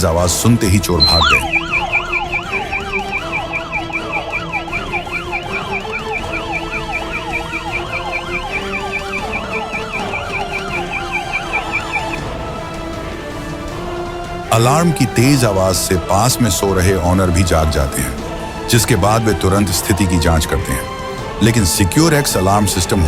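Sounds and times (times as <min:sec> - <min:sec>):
intruder alarm siren: 0:01.0 - 0:12.4.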